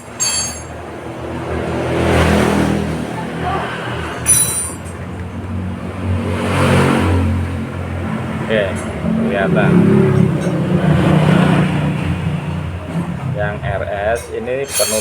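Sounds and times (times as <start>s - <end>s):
sharp metal clinks: 0.0s - 0.8s, 4.2s - 4.9s, 14.6s - 15.0s
vehicle passing on road: 0.7s - 15.0s.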